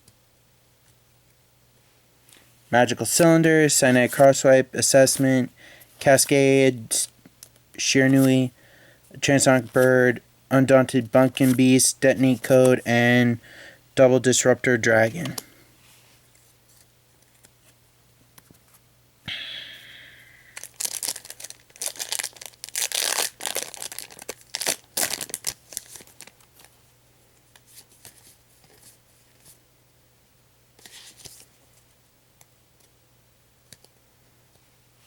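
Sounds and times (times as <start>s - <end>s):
cards rustling: 2.3s - 8.5s, 9.1s - 13.3s, 14.3s - 15.6s, 20.5s - 26.8s, 27.6s - 29.6s, 30.8s - 31.6s
wrapper crinkling: 20.5s - 26.8s
foil pack tearing: 20.6s - 26.5s.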